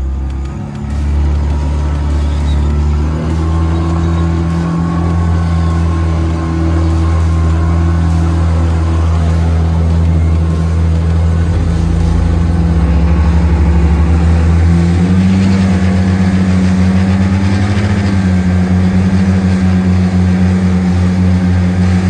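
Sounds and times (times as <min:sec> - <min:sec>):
outboard motors running: 0:00.0 - 0:22.0.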